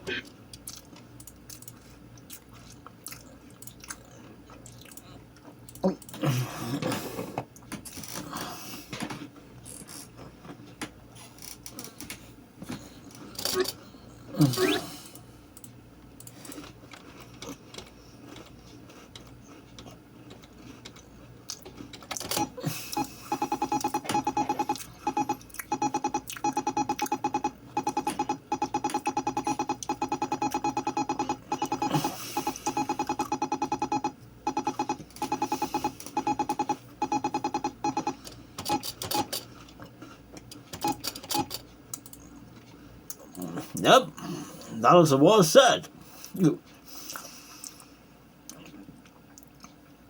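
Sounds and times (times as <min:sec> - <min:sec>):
rapidly pulsing electronic tone: 0:22.3 - 0:39.3
scattered clicks: 0:40.4 - 0:42.3.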